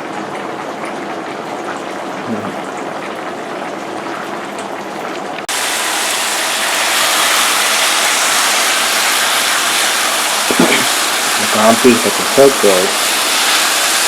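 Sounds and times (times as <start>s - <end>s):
meat sizzling in a pan: 5.5s - 14.0s
pot boiling hiss: 5.5s - 14.0s.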